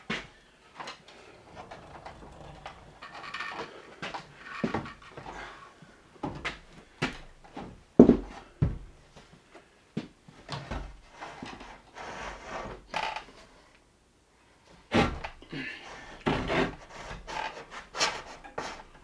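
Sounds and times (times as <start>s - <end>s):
wooden parts knocking and scraping: 0.8s - 5.4s.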